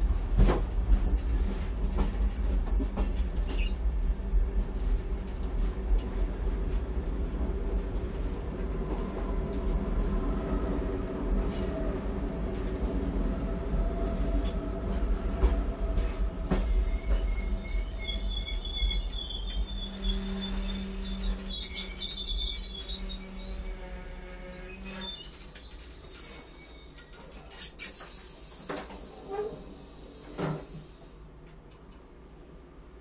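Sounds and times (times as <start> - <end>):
train rumbling: 0.0 - 33.0
high thin squeals: 16.2 - 27.2.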